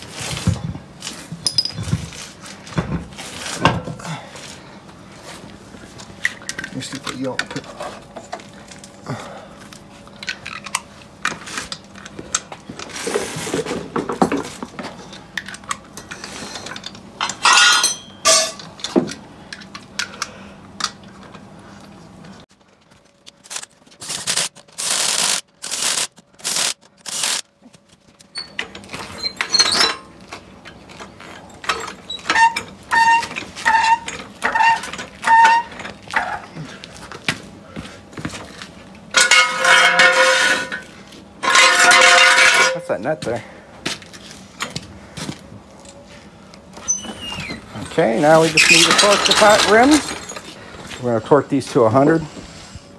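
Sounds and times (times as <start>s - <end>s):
hand tools clinking on metal: 15.4s - 19.2s, 39.1s - 40.8s, 41.4s - 43.2s, 47.8s - 50.5s.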